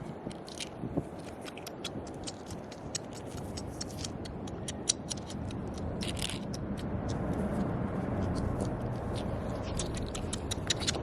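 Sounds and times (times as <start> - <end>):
low rushing noise: 4.4 - 11.0.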